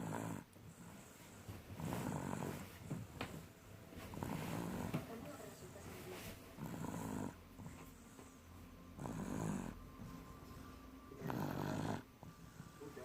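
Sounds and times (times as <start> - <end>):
rough low snores: 1.8 - 3.1, 6.6 - 7.4, 8.9 - 9.8, 11.2 - 12.8.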